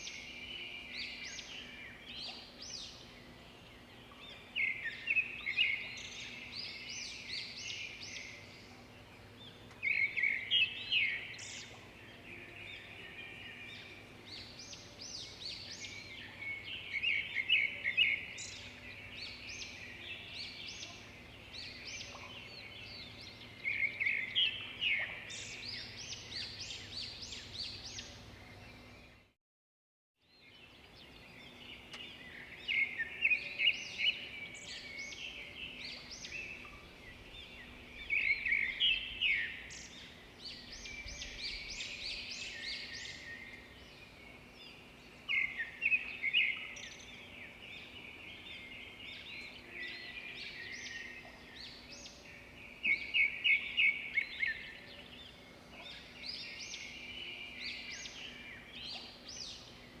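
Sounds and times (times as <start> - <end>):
small birds chirping trills: 30.2 - 60.0.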